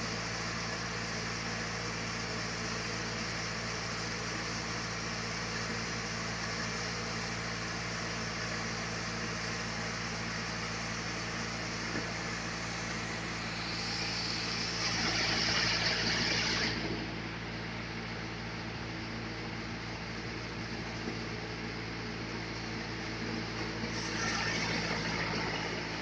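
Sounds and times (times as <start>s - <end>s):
sawmill machinery humming: 10.7s - 17.2s.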